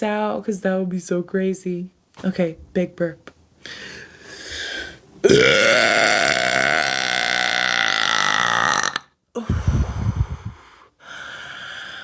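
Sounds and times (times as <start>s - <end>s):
woman burping: 5.2s - 9.1s
rough low rumble: 9.5s - 10.6s.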